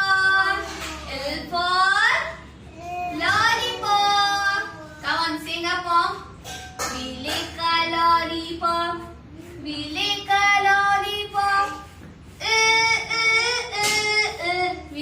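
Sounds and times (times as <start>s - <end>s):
child singing: 2.7s - 5.5s.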